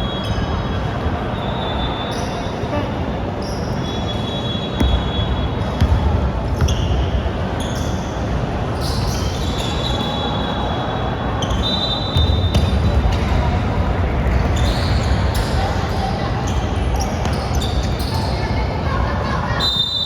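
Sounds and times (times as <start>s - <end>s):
shoe squeaks on court: 3.4s - 8.2s, 14.3s - 15.5s, 16.4s - 18.4s
basketball bouncing: 4.8s - 7.0s.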